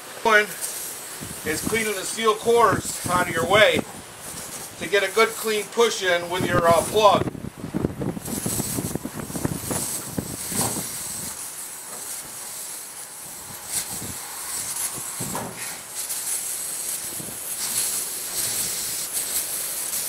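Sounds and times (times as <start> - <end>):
air hissing out of tire: 0.0 - 20.0
tool scraping and knocking: 15.2 - 15.8.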